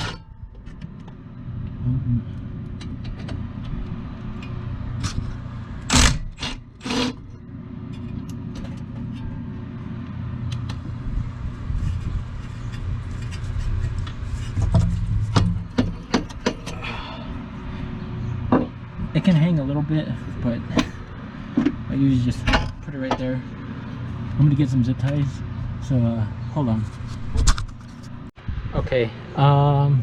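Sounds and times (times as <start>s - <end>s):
hand tools clanking on metal: 20.7s - 21.8s.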